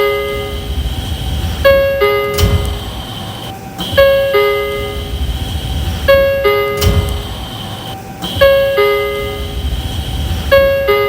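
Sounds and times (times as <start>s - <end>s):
train door chime ding-dong: 0.0s - 0.7s, 1.7s - 5.2s, 6.1s - 9.6s, 10.5s - 11.0s
steady high tone: 0.0s - 11.0s.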